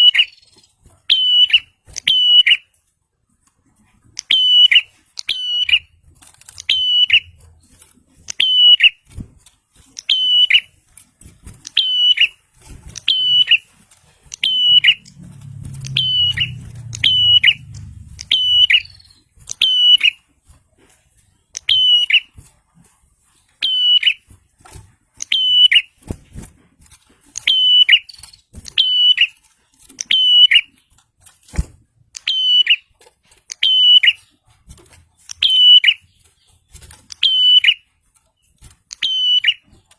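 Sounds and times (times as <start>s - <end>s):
soft low rumble: 14.1s - 19.4s.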